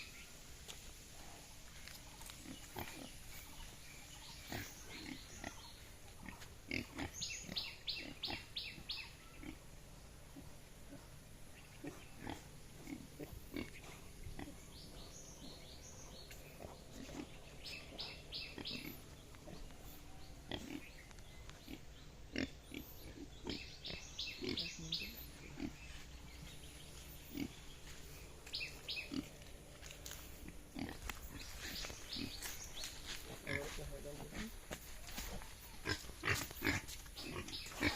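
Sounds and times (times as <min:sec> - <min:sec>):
pigs grunting: 0:02.4 - 0:03.6, 0:04.3 - 0:14.8, 0:16.4 - 0:21.0, 0:21.6 - 0:26.0, 0:27.2 - 0:27.7, 0:30.4 - 0:32.6, 0:33.3 - 0:34.7, 0:35.4 - 0:37.9.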